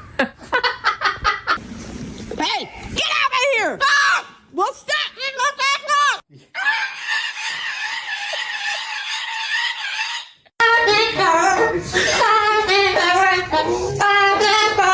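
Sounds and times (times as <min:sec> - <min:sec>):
parrot screeching: 0:06.6 - 0:10.4
high voice singing: 0:10.6 - 0:14.9.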